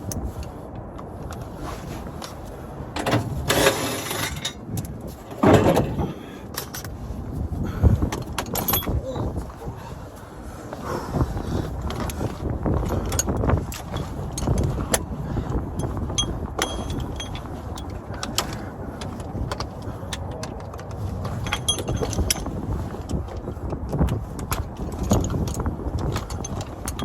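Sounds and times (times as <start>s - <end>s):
wind buffeting microphone: 0.0s - 27.0s
tools clinking against metal: 8.2s - 9.2s, 12.8s - 15.1s, 15.8s - 22.6s, 24.4s - 27.0s.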